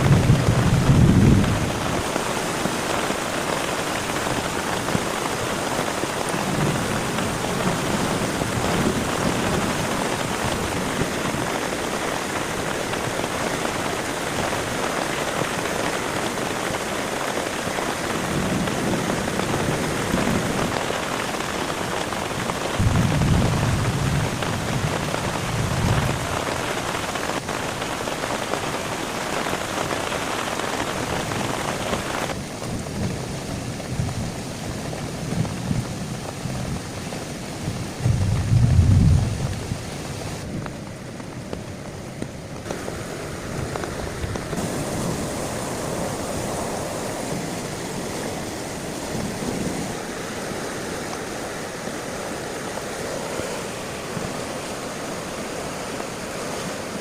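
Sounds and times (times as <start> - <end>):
thunder rolling: 0.0 - 2.0, 22.7 - 26.5, 37.6 - 40.6
heavy rain falling: 0.0 - 57.0.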